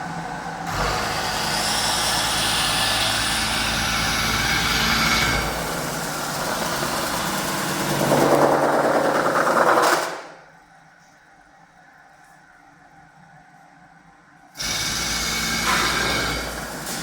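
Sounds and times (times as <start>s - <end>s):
faint machine hum: 0.0s - 17.0s
metal spinning machine grinding: 4.6s - 10.2s.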